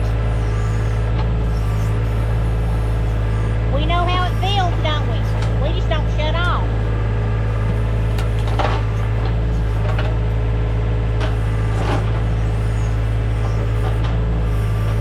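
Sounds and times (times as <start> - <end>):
tractor diesel engine running: 0.0 - 15.0
digging scrapes and knocks: 7.6 - 10.2, 11.2 - 15.0.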